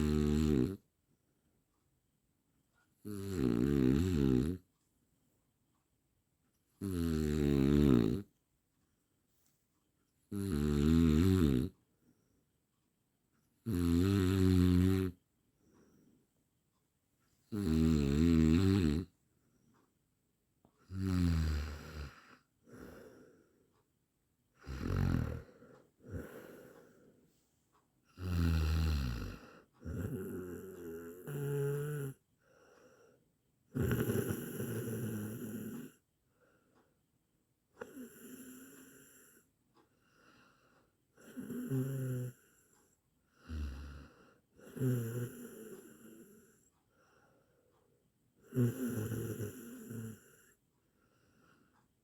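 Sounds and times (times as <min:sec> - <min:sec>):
person snoring: 0:00.0 - 0:00.8, 0:03.0 - 0:04.6, 0:06.8 - 0:08.3, 0:10.3 - 0:11.8, 0:13.6 - 0:15.2, 0:17.5 - 0:19.1, 0:20.9 - 0:23.3, 0:24.6 - 0:27.0, 0:28.2 - 0:32.2, 0:33.7 - 0:36.0, 0:37.8 - 0:39.4, 0:41.2 - 0:42.7, 0:43.4 - 0:46.7, 0:48.4 - 0:50.6.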